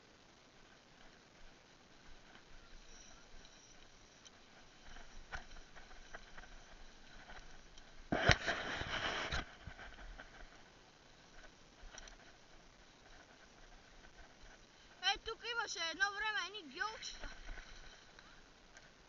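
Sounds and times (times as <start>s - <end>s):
rush of scraping noise: 8.1s - 10.3s.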